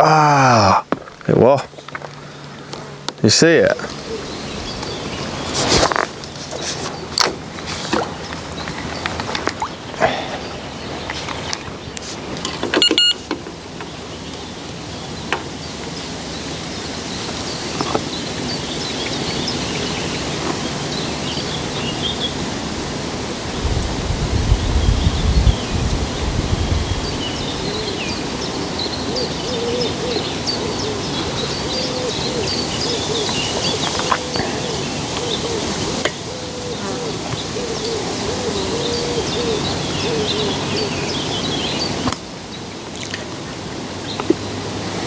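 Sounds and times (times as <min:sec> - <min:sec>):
birds chirping and singing: 0:03.4 - 0:07.2, 0:24.5 - 0:42.2
dove cooing: 0:03.7 - 0:06.9, 0:27.1 - 0:41.8.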